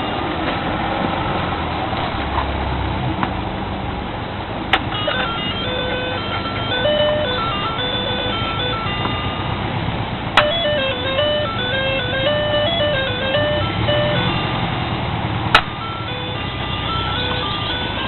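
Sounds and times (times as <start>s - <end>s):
electronic toy piano tune: 4.9s - 9.6s, 10.4s - 14.8s, 15.7s - 18.0s
sharp click: 15.5s - 15.8s.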